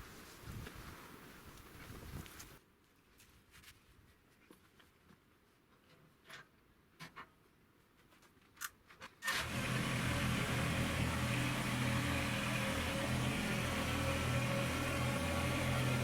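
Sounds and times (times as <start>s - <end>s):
tractor diesel engine running: 9.3s - 16.0s.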